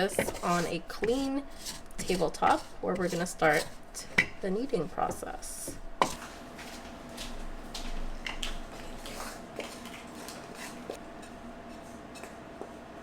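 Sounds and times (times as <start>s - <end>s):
utensil scraping a saucepan: 0.0s - 6.2s, 10.2s - 12.3s.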